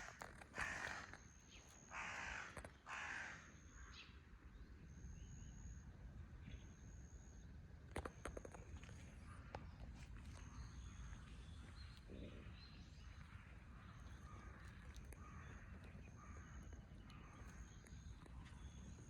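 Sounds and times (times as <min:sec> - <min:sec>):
crow cawing: 0:00.6 - 0:01.2, 0:01.9 - 0:03.9, 0:14.2 - 0:17.7.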